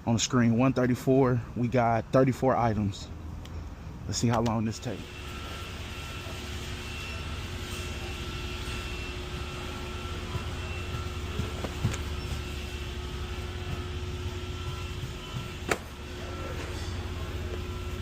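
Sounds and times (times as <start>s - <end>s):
ventilation hum: 0.0s - 18.0s
faint steady high tones: 4.9s - 18.0s.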